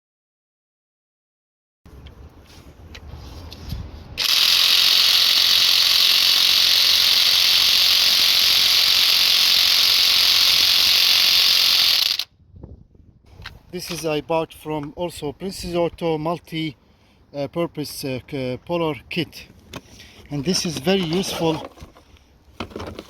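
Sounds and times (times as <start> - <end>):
impact wrench rattling: 4.2 - 12.3, 20.4 - 23.0.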